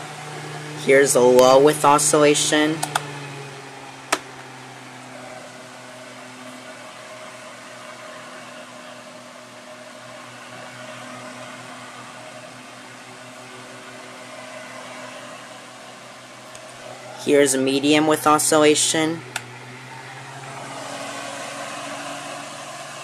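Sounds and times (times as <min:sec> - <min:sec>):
table fan running: 0:00.0 - 0:23.0
control knob click: 0:02.8 - 0:03.1.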